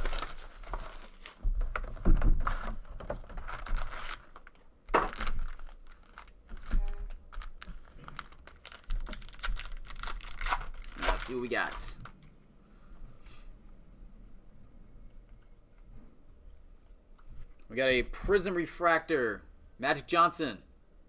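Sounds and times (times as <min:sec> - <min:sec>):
plastic wrapping crinkling and tearing: 0:00.0 - 0:12.2.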